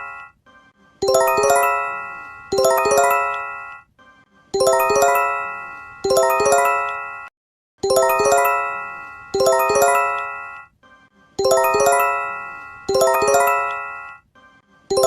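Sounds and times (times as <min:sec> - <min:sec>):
bell-like alert chime: 0:01.0 - 0:03.6, 0:04.6 - 0:10.4, 0:11.4 - 0:14.1.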